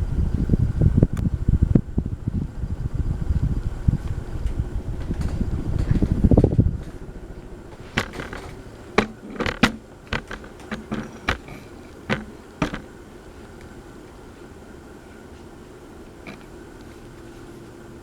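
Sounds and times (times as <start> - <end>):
fan draught buffeting microphone: 0.0 - 18.0
sharp clicks: 4.4 - 13.7.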